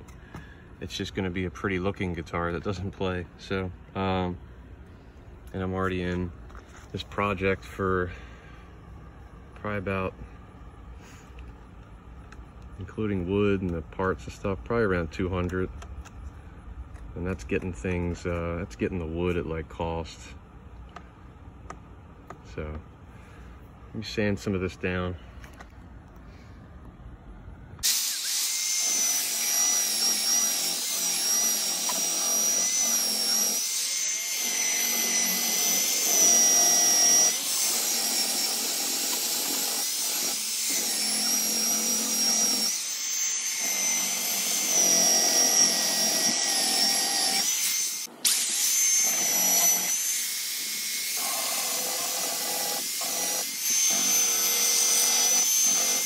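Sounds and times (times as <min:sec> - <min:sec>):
electric sander whining: 0:27.8 - 0:56.0.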